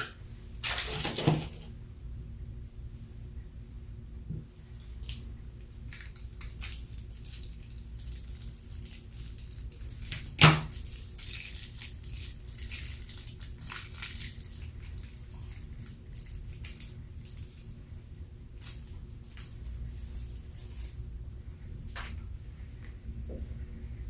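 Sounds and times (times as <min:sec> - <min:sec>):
slime squishing and crackling: 0:05.9 - 0:17.9.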